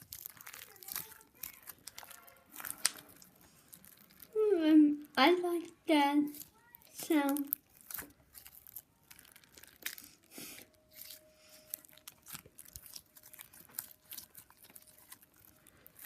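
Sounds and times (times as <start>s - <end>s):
slime squeezed with sticky clicks: 0.0s - 4.0s.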